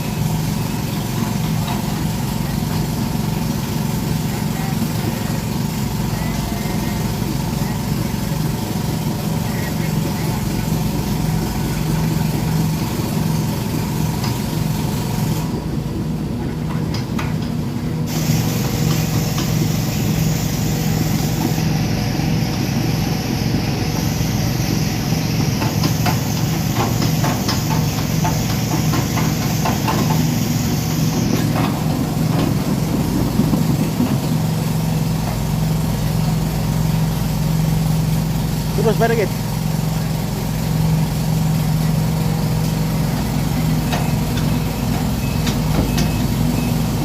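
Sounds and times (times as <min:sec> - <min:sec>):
diesel engine running: 0:00.0 - 0:47.0.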